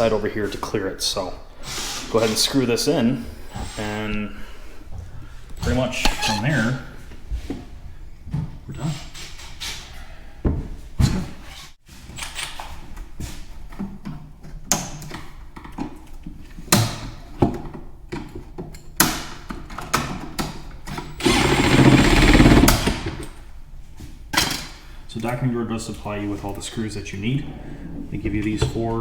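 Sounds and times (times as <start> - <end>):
cordless drill running: 21.2 - 23.3
parts and tools knocking: 21.2 - 23.3.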